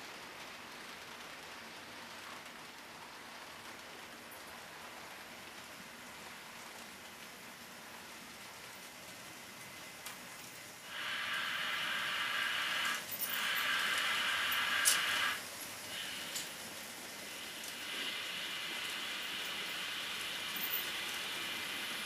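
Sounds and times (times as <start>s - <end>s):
model train motor hum: 10.8s - 22.0s.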